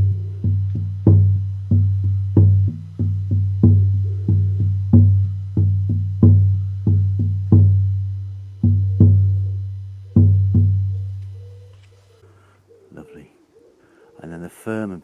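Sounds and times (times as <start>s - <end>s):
frame drum booming strokes: 0.0s - 11.4s.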